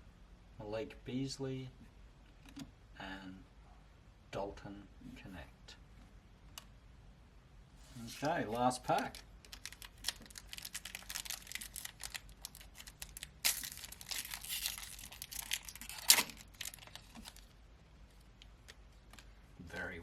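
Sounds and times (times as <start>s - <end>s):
wrapper tearing and crinkling: 8.2s - 17.5s.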